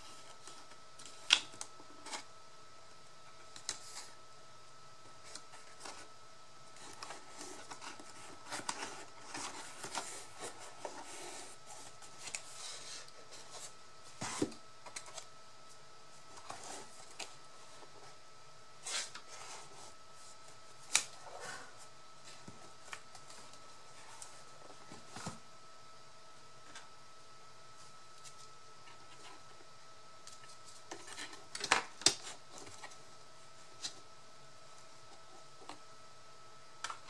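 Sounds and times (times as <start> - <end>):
paper rustling: 6.7 - 15.3.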